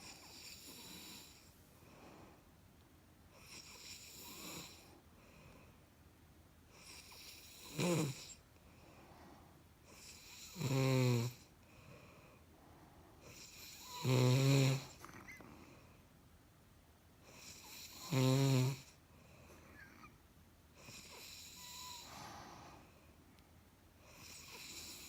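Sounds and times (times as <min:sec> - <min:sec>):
woman snoring: 0:00.0 - 0:01.5, 0:03.4 - 0:04.9, 0:06.8 - 0:08.4, 0:09.9 - 0:11.5, 0:13.3 - 0:15.4, 0:17.3 - 0:19.0, 0:20.8 - 0:22.9, 0:24.1 - 0:25.0
soft breaths: 0:00.0 - 0:02.7, 0:03.3 - 0:05.9, 0:08.2 - 0:10.4, 0:11.4 - 0:14.0, 0:14.7 - 0:16.3, 0:18.9 - 0:25.0.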